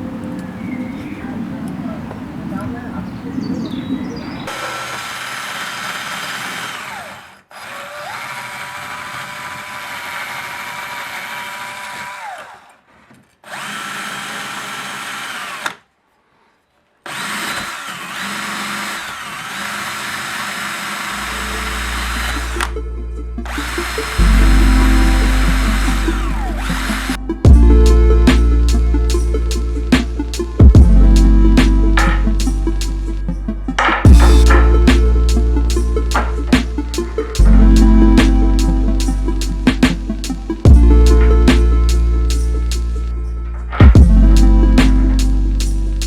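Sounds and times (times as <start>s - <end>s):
electric power tool whining: 4.5s - 15.8s, 17.0s - 22.8s, 23.4s - 30.9s
bass-heavy music: 21.2s - 46.0s.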